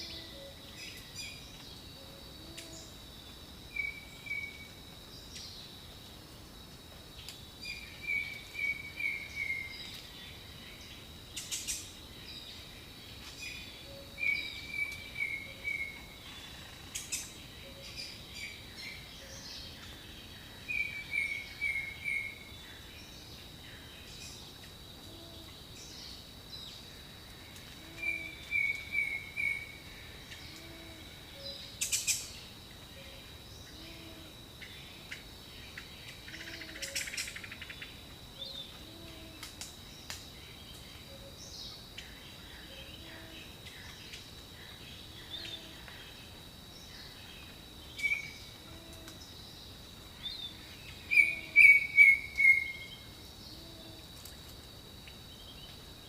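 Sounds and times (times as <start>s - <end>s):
high insect drone: 0.0s - 56.0s
soft low hoots: 25.0s - 25.6s, 30.3s - 31.6s, 48.6s - 49.2s, 53.5s - 54.1s.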